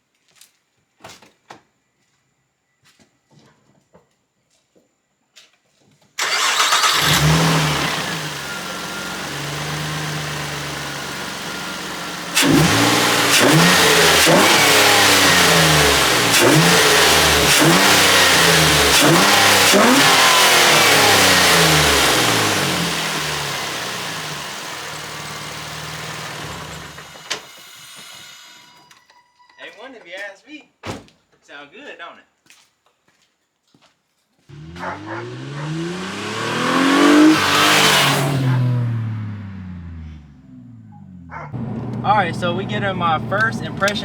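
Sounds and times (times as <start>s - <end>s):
car engine idling and revving: 6.2s - 28.7s, 34.5s - 44.0s.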